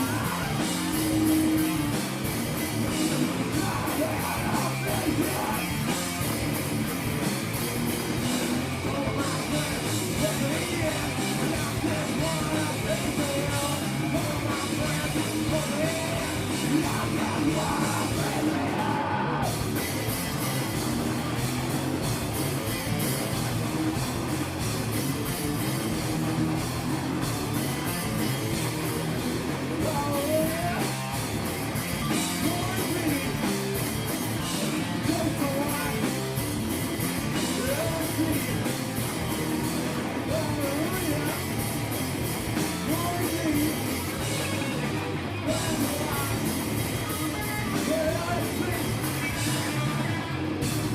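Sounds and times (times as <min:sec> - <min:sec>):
person singing: 0:00.0 - 0:00.7, 0:03.4 - 0:06.0, 0:08.8 - 0:19.6, 0:29.8 - 0:31.0, 0:32.3 - 0:33.6, 0:34.5 - 0:36.2, 0:37.4 - 0:38.8, 0:40.2 - 0:41.5, 0:42.7 - 0:44.8, 0:45.5 - 0:49.9
drum kit: 0:00.0 - 0:50.9
electric guitar: 0:00.0 - 0:50.9.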